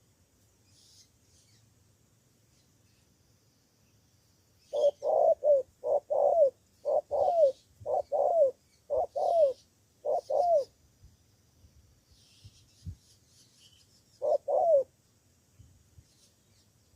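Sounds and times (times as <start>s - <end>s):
dove cooing: 4.6s - 10.8s, 14.2s - 14.9s.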